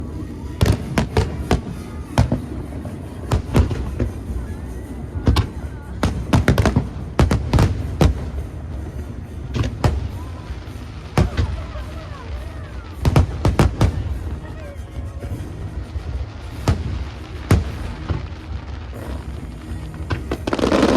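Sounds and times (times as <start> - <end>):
fireworks booming: 5.2 - 20.9.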